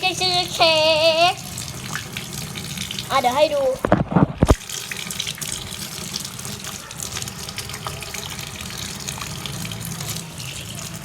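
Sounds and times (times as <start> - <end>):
water running from a tap: 0.0 - 11.0.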